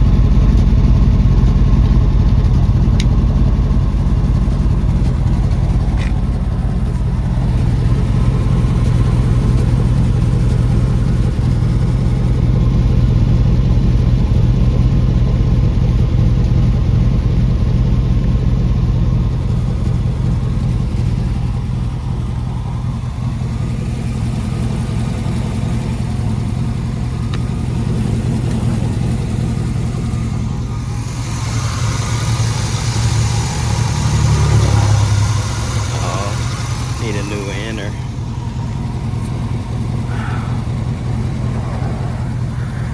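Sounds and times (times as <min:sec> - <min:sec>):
engine humming steadily: 0:00.0 - 0:42.9
broad rushing noise: 0:39.4 - 0:42.9.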